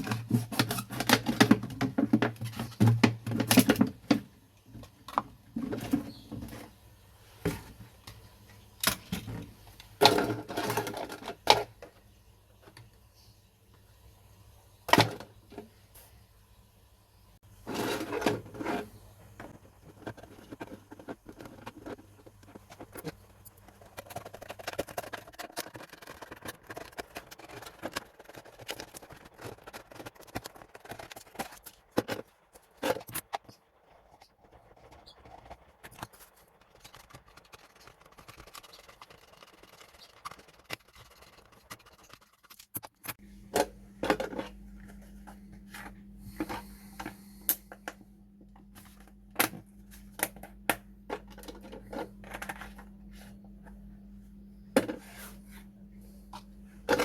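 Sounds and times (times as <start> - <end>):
plastic bottles clicking and scraping: 0.0 - 6.8, 8.8 - 12.0, 17.6 - 44.6, 51.0 - 53.0
low steady hum: 43.0 - 57.0.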